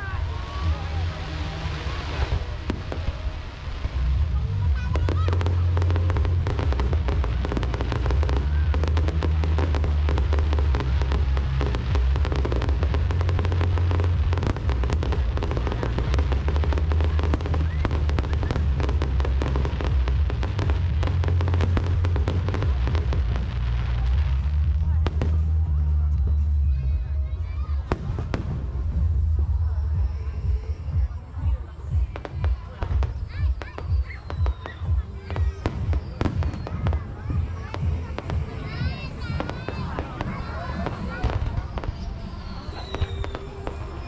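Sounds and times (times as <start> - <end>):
loud bass-heavy music: 0.0 - 42.0
fireworks crackling and popping: 0.0 - 44.0.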